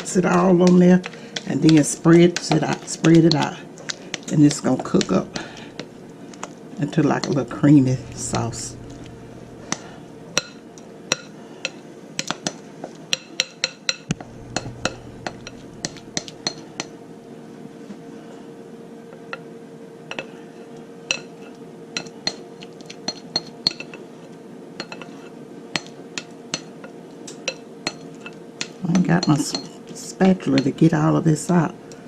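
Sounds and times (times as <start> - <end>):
faint steady hum: 3.0 - 12.0, 14.1 - 22.2.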